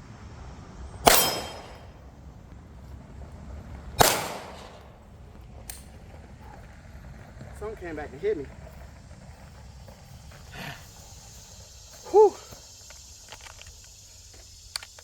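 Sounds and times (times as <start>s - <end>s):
gunshots with echoing tail: 1.0s - 2.0s, 4.0s - 5.1s.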